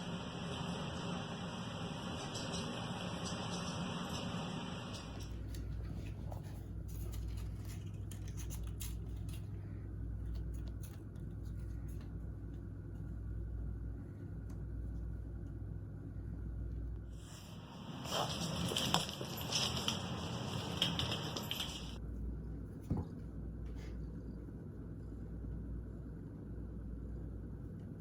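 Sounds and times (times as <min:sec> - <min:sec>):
steady low hum: 0:00.0 - 0:28.0
rustling: 0:17.2 - 0:22.0.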